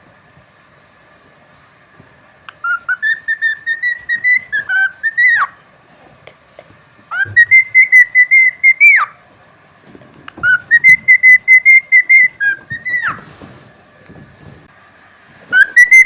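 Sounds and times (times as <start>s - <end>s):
cockatiel whistling: 2.5s - 5.6s, 7.1s - 9.2s, 10.3s - 13.4s, 15.5s - 16.0s.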